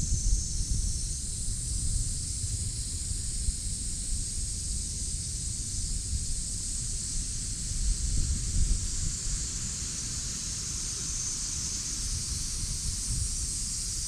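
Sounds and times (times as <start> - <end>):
wind rumbling on microphone: 0.0 - 10.5, 11.5 - 14.0
cicadas droning: 0.0 - 14.0.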